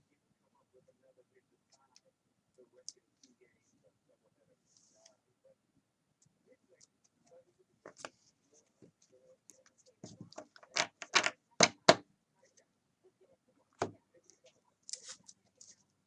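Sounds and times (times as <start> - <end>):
trading cards clicking and tapping: 10.1 - 12.0.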